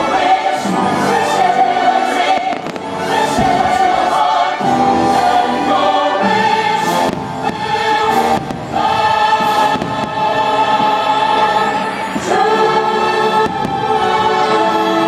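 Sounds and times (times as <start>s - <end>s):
choir singing held chords: 0.0s - 15.0s
music: 0.0s - 15.0s.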